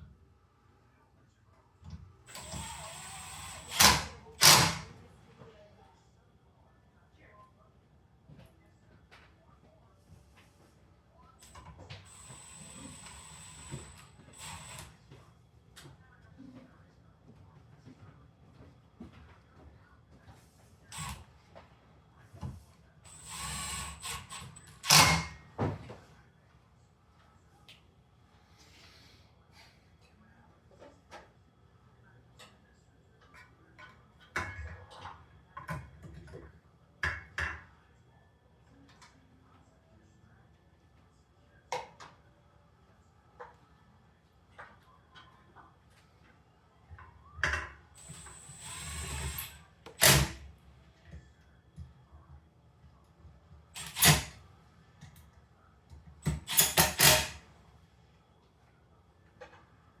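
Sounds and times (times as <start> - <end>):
hard parts knocking and clinking: 53.8 - 54.4, 56.2 - 57.4.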